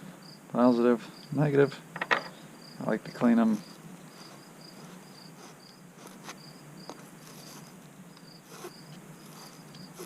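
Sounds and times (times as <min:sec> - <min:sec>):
crickets chirping: 0:00.0 - 0:10.0
clicks and scrapes on battery terminals: 0:03.4 - 0:10.0.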